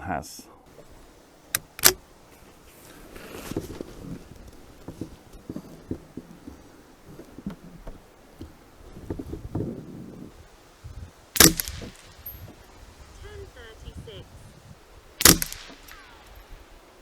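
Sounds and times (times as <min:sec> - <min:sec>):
handling knocks and rustling: 0:00.7 - 0:10.3.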